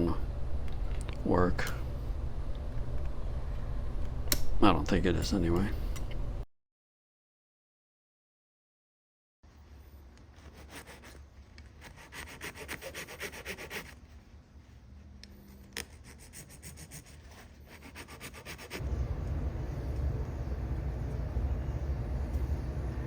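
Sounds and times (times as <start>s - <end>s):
steady low rumble: 0.0s - 6.4s, 18.8s - 23.0s.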